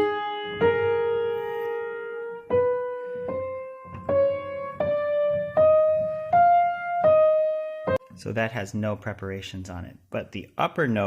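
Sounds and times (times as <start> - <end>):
piano single notes: 0.0 - 8.2.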